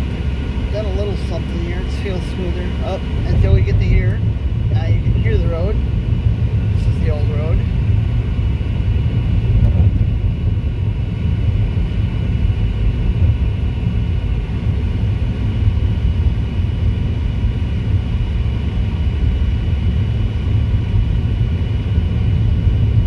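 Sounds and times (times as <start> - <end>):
car tyres rumbling on rough road: 0.0 - 18.2.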